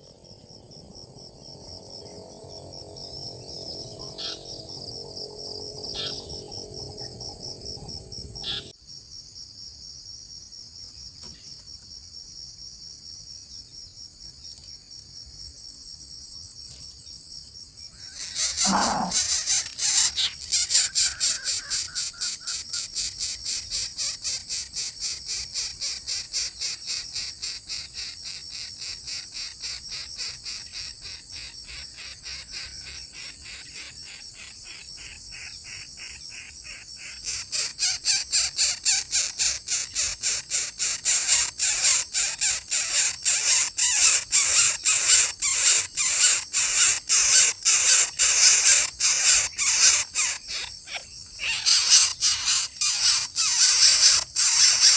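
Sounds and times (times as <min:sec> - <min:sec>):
thin high whine: 0:00.0 - 0:08.7
high-pitched insect chirping: 0:00.0 - 0:08.8, 0:17.8 - 0:54.9.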